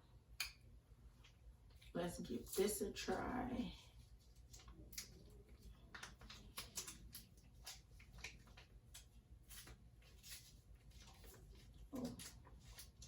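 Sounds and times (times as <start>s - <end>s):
low room hum: 0.0s - 13.0s
candy wrapper crackling: 4.1s - 13.0s.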